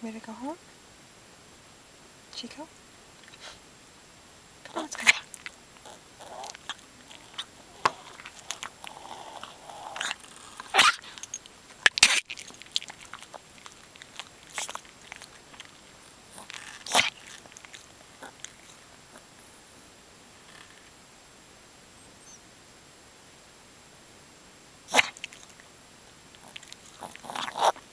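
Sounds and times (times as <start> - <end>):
dog noisy breathing: 4.7 - 19.4, 26.4 - 27.8.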